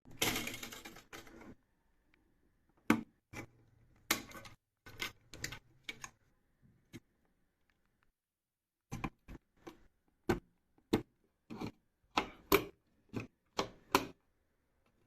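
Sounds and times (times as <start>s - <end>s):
computer parts clicking and knocking: 0.1s - 1.6s, 2.8s - 6.2s, 8.9s - 14.2s.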